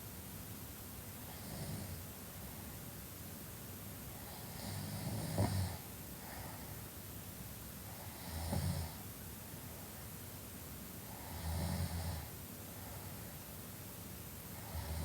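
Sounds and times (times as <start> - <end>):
soft breath: 12.8 - 13.4.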